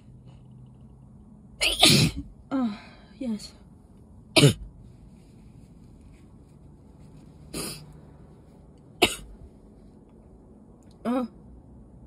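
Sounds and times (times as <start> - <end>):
woman sneezing: 1.6 - 2.2.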